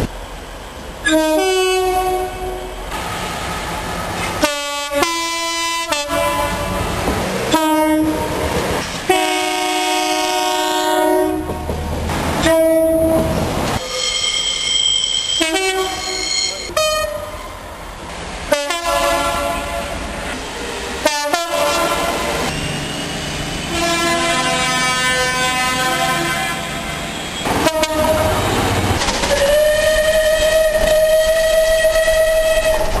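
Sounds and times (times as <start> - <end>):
train on rails: 0.0 - 33.0
diesel locomotive horn: 1.0 - 2.8, 4.4 - 6.9, 7.5 - 8.4, 9.1 - 11.8, 12.4 - 17.6, 18.5 - 20.2, 21.0 - 22.5, 23.7 - 28.6, 29.3 - 33.0.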